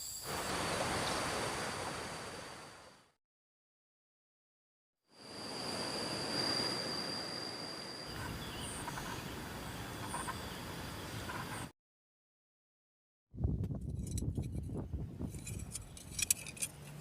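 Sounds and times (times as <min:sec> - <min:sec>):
thin high whine: 0:05.1 - 0:09.3
outdoor ambient rush: 0:05.1 - 0:11.7, 0:13.9 - 0:17.0.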